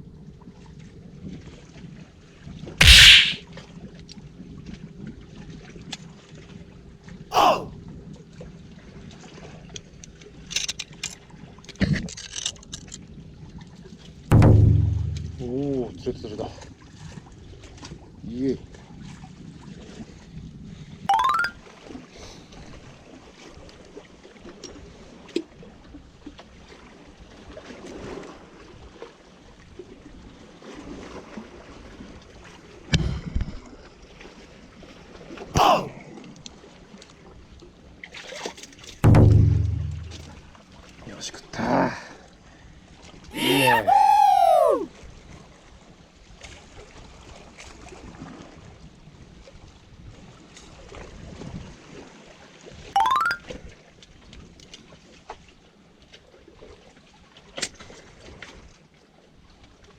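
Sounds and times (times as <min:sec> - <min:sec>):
wind: 0:09.7 - 0:13.2, 0:43.4 - 0:44.9
loud knock: 0:14.4 - 0:15.6, 0:39.1 - 0:40.4
water noise: 0:21.1 - 0:21.6.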